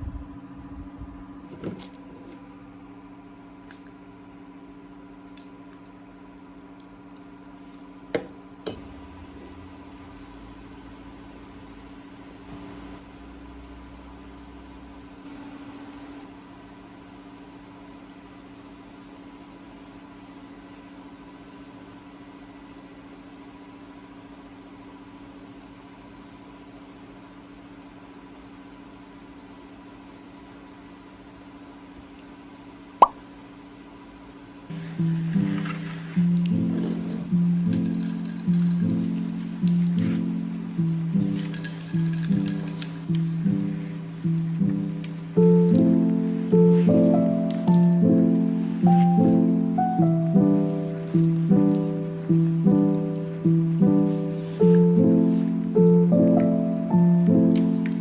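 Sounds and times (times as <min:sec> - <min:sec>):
appliance electrical hum: 0:00.0 - 0:58.0.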